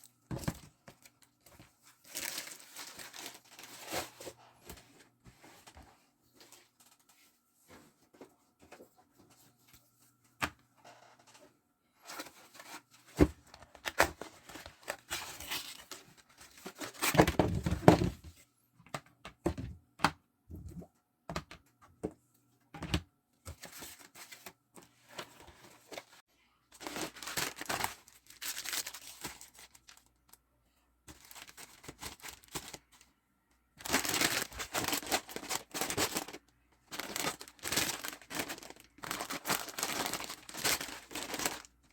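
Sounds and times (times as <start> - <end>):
plastic packaging crinkling: 2.0 - 4.0, 26.7 - 30.4, 31.1 - 33.0, 33.8 - 41.9.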